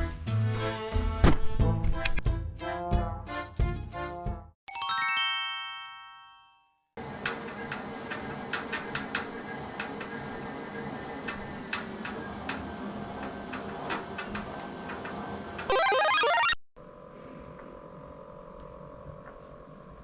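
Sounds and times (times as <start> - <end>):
electronic sweep of rising tones: 15.7 - 16.6.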